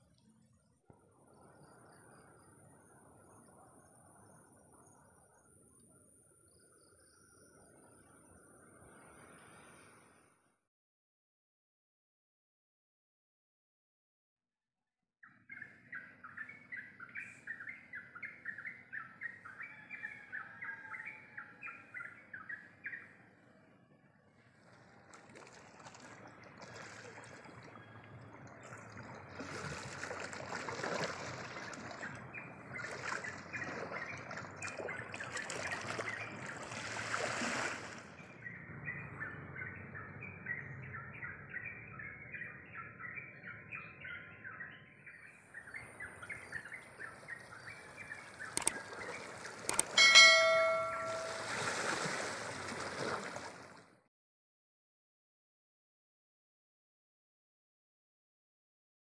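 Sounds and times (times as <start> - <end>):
sharp clicks: 48.6 - 48.8, 49.7 - 50.0
loud bell-like ring: 50.0 - 51.7.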